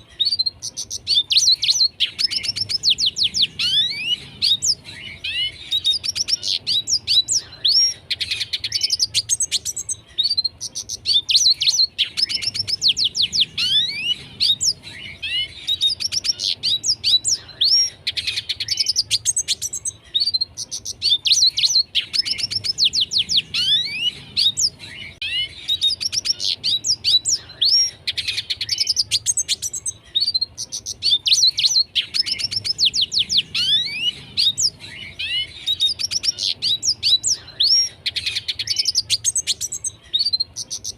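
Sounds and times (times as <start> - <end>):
bird twittering song: 0.0 - 40.9.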